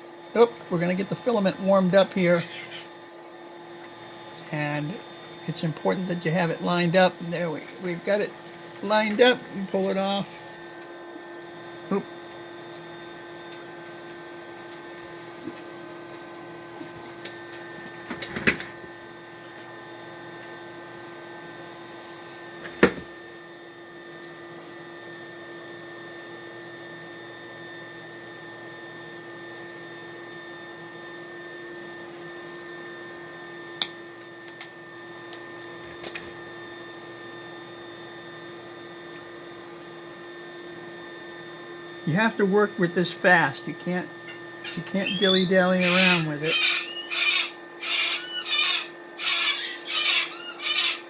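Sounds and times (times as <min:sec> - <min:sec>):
electrical machine hum: 0:00.0 - 0:51.0.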